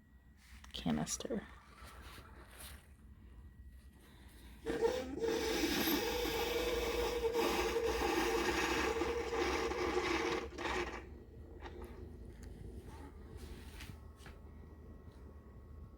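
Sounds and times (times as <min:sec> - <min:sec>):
coffee maker pump buzzing: 0:04.6 - 0:13.6.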